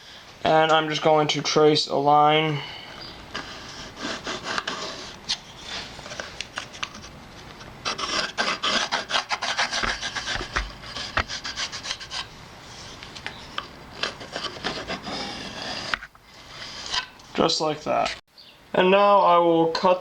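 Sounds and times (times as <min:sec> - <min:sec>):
pencil scratching on wood: 0:03.3 - 0:05.2, 0:07.8 - 0:12.3, 0:14.0 - 0:17.0.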